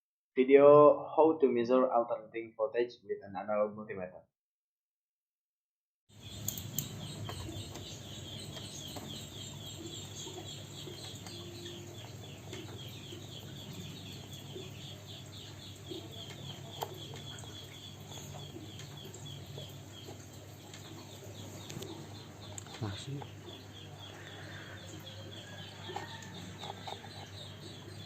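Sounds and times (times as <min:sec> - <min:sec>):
birds chirping: 0:06.1 - 0:28.0
low background hum: 0:06.2 - 0:28.0.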